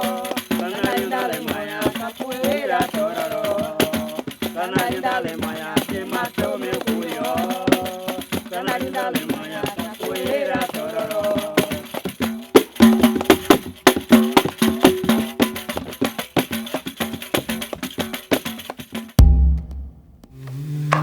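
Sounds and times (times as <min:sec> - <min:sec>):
rattle and hand percussion: 0:00.0 - 0:19.7
deep thump: 0:19.2 - 0:20.4.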